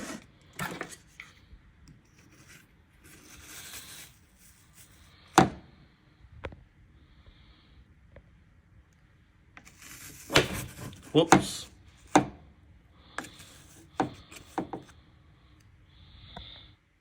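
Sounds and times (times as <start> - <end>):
soft scraping of coffee grounds: 0.0 - 5.3, 9.6 - 11.7, 13.0 - 15.0.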